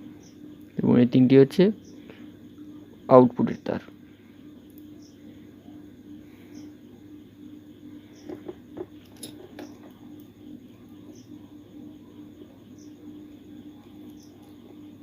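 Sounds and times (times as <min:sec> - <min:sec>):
low electrical hum: 0:00.0 - 0:15.0.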